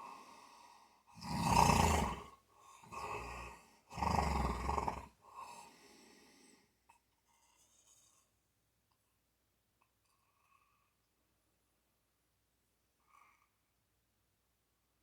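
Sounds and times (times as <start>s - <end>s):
loud rattling snores: 1.2s - 5.2s.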